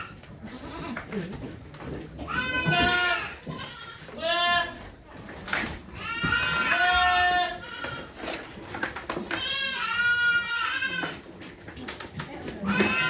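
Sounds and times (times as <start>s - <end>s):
goat bleating: 0.0s - 1.1s, 2.3s - 4.8s, 5.9s - 8.2s, 9.3s - 11.2s, 12.6s - 13.0s.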